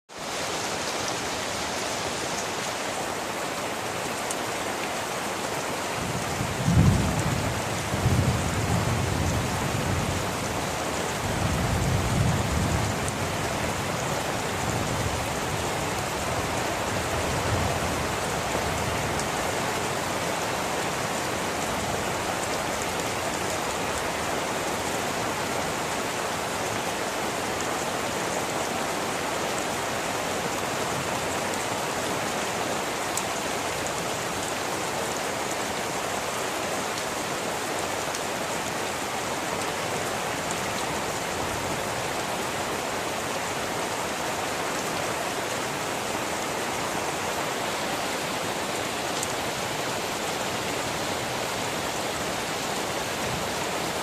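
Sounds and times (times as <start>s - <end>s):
heavy rain falling: 0.1s - 54.0s
thunder rumbling: 6.1s - 10.2s.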